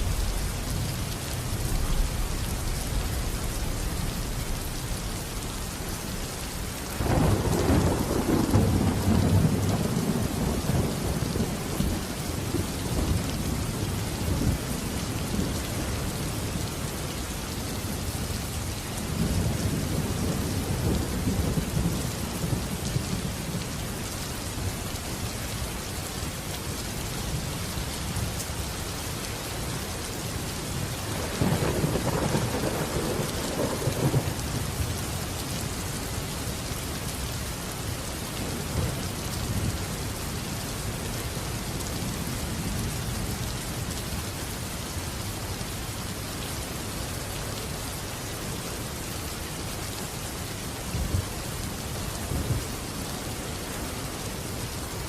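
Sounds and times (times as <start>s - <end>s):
rolling thunder: 0.0s - 13.6s, 31.0s - 34.4s
heavy rain: 0.0s - 55.0s.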